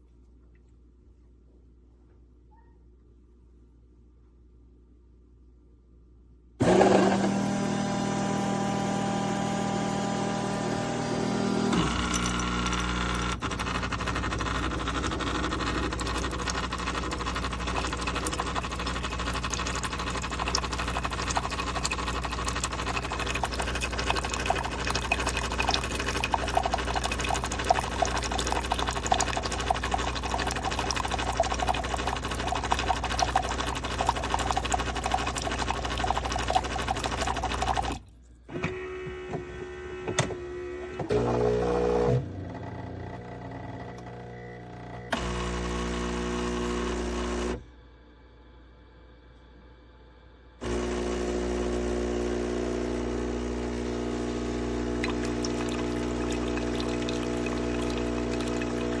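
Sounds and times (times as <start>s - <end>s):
espresso machine buzzing and crackling: 6.6s - 38.0s, 40.6s - 47.6s, 50.6s - 59.0s.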